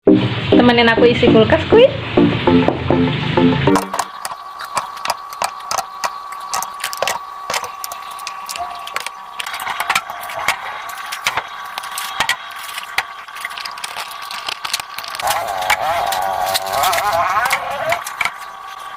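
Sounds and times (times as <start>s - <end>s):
groceries rattling into a refrigerator: 3.9s - 18.9s.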